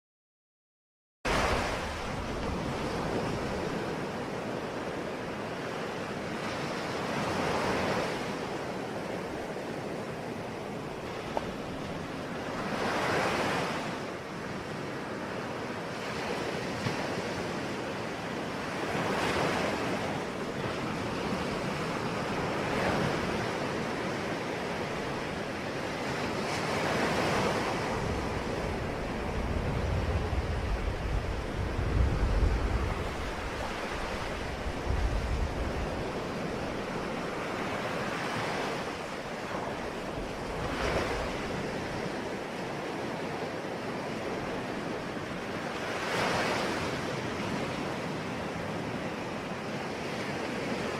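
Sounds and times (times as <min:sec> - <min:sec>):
ocean waves breaking: 0:01.3 - 0:50.9
wind on microphone: 0:16.0 - 0:50.9.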